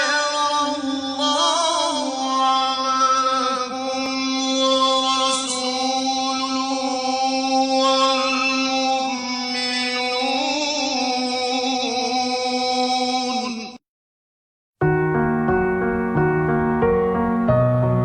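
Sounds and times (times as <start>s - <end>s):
person reciting melodically: 0.0s - 13.8s.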